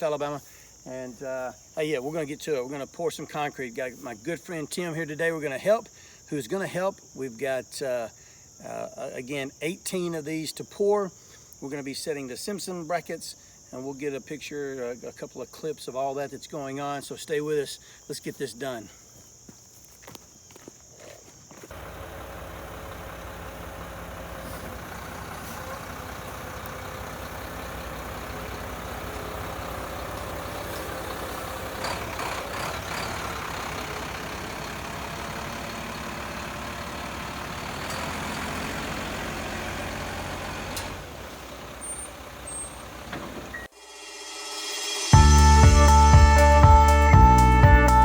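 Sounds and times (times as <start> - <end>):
diesel truck engine running: 21.7 - 43.7.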